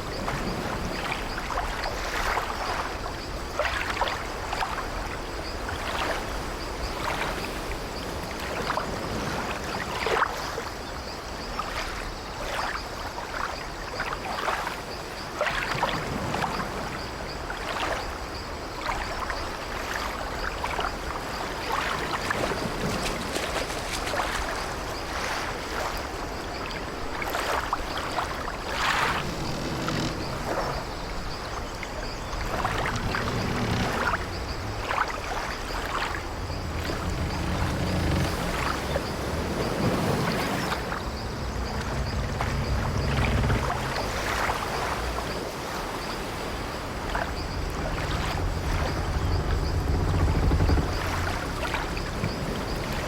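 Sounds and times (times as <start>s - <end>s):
sea waves against hull: 0.0s - 53.0s
ship timbers creaking: 28.4s - 31.6s, 32.4s - 45.4s, 47.2s - 53.0s.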